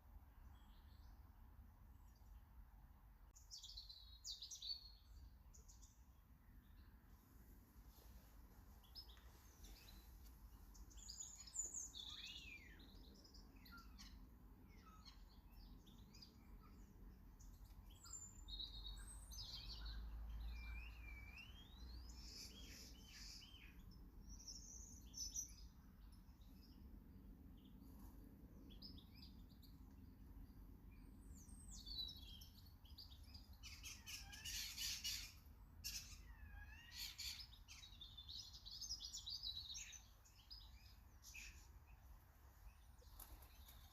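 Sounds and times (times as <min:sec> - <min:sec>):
small birds chirping and whistling: 0:10.8 - 0:26.8, 0:30.9 - 0:41.7.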